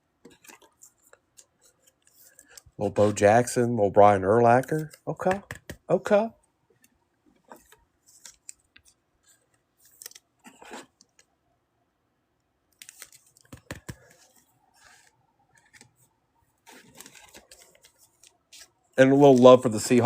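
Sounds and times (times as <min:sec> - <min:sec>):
card wrappers rustling: 0:00.3 - 0:03.6, 0:04.5 - 0:05.4, 0:07.5 - 0:11.3, 0:12.8 - 0:20.0.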